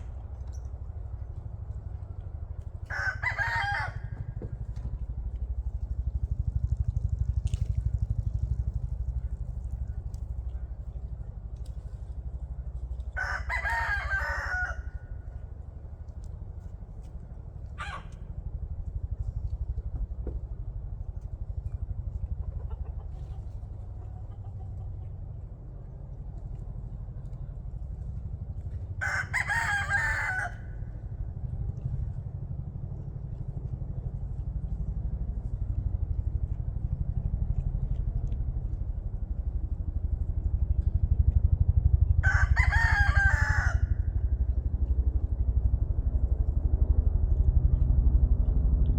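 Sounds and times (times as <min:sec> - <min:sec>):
low pulsing rumble: 0:00.0 - 0:48.9
rooster crowing: 0:02.9 - 0:04.3, 0:13.2 - 0:15.2, 0:17.8 - 0:18.1, 0:29.0 - 0:30.9, 0:42.2 - 0:44.0
chickens clucking: 0:22.1 - 0:25.4.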